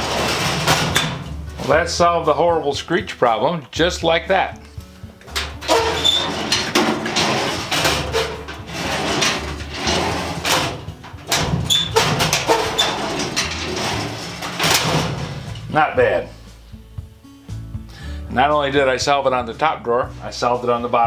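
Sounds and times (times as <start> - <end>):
drawer clunking shut: 0.0 - 1.9, 5.3 - 15.7
metal drawers sliding on runners: 0.0 - 2.8, 4.4 - 15.7.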